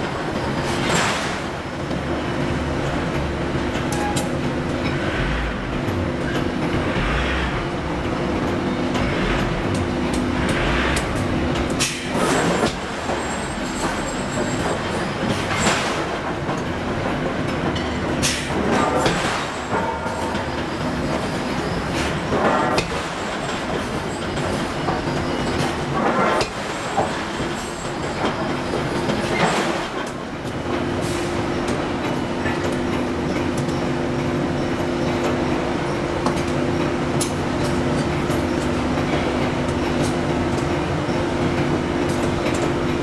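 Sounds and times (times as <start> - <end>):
hydraulic machinery hum: 2.0 - 12.6.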